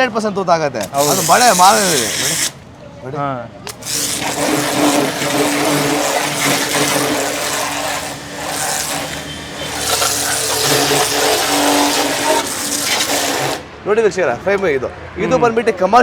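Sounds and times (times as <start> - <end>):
pressure washer water hiss: 0.8 - 2.6, 3.7 - 13.7
pump humming: 0.8 - 2.6, 3.7 - 13.8.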